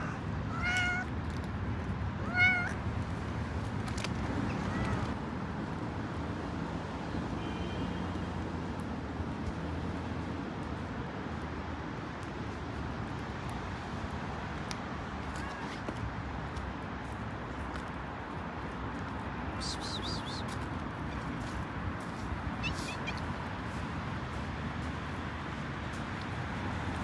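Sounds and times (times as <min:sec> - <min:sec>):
cat meowing: 0:00.0 - 0:01.1, 0:02.2 - 0:02.8, 0:04.4 - 0:05.1, 0:22.5 - 0:23.4.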